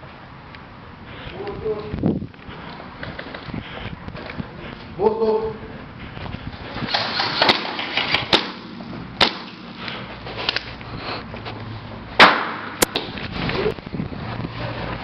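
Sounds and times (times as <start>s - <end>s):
airsoft gun shots: 7.4s - 9.7s, 12.2s - 13.1s.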